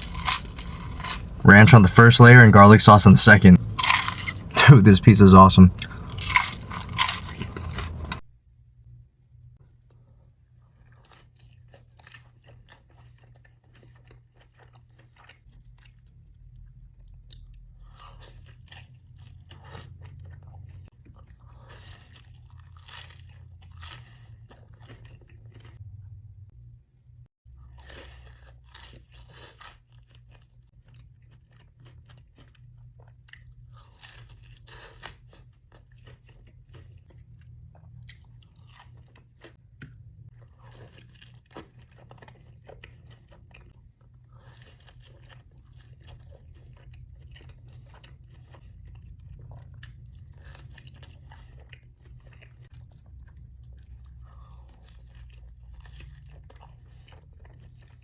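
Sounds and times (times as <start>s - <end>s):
crunchy bites and chewing: 0.0s - 8.2s, 10.6s - 25.8s, 27.5s - 58.0s
steady low hum: 0.0s - 9.6s.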